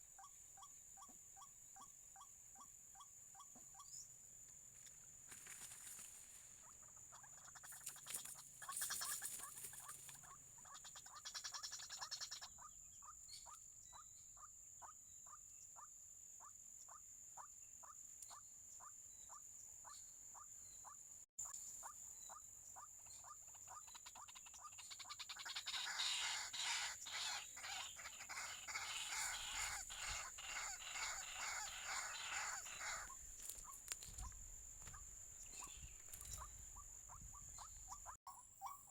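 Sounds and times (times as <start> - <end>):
waterhen calling: 23.8 - 38.9.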